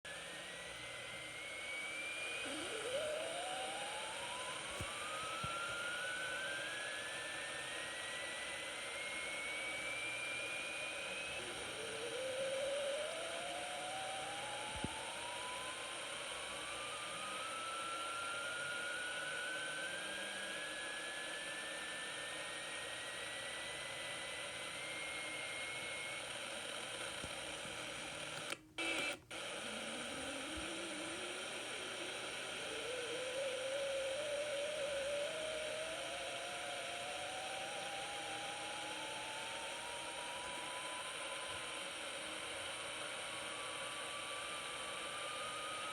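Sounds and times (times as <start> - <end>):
radio static hiss: 0.2 - 17.5, 24.6 - 45.9
faint clicks: 27.0 - 29.6.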